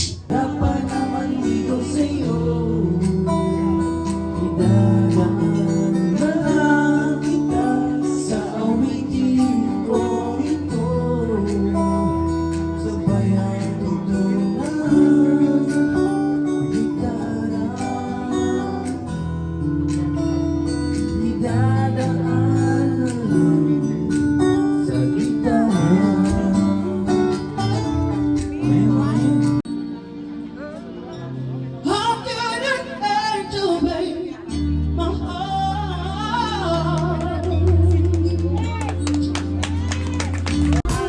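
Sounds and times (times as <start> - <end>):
person singing: 0.0 - 29.7, 31.8 - 41.0
acoustic guitar: 0.0 - 41.0.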